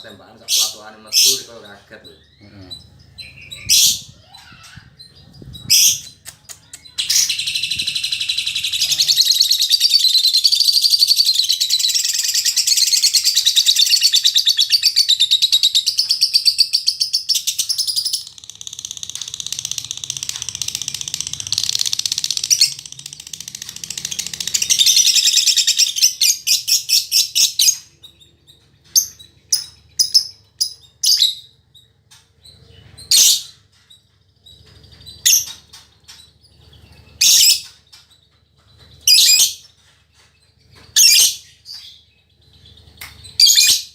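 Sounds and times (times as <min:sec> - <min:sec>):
lovebird chattering chirps: 0:00.0 - 0:33.6, 0:38.8 - 0:39.7.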